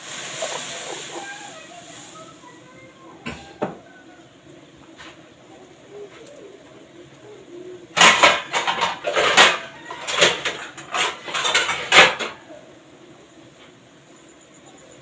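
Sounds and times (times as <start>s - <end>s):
hard objects clattering: 7.9s - 12.4s.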